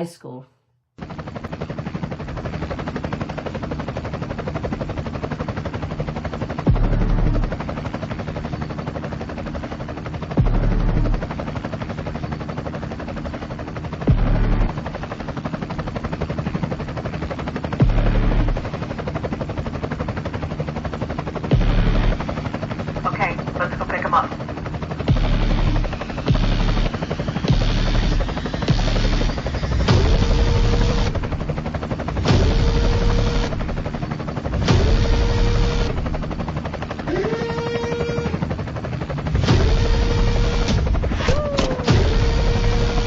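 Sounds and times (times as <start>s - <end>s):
helicopter rotor chopping: 1.0s - 43.0s
low rumble: 6.6s - 7.8s, 14.0s - 15.2s, 17.8s - 19.0s.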